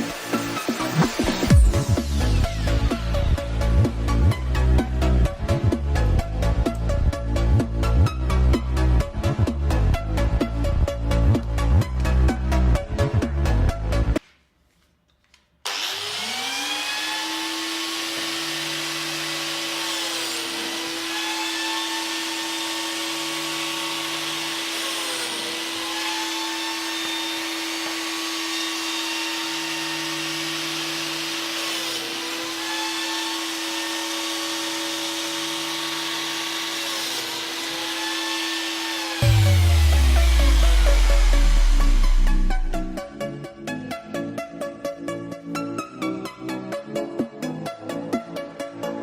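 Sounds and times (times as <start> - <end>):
electric power tool whining: 15.6 - 43.0.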